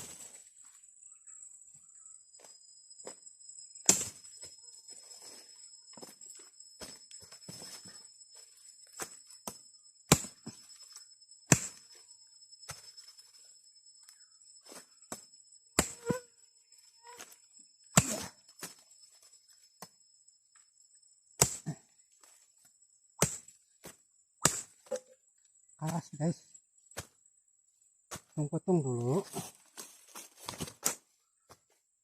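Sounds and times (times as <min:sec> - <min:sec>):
high insect drone: 0:00.0 - 0:31.4
blade chopping woody vine: 0:03.8 - 0:04.2, 0:09.0 - 0:10.6, 0:11.5 - 0:11.9, 0:15.8 - 0:16.2, 0:17.9 - 0:18.3, 0:21.4 - 0:21.7, 0:23.2 - 0:23.5, 0:24.4 - 0:25.0.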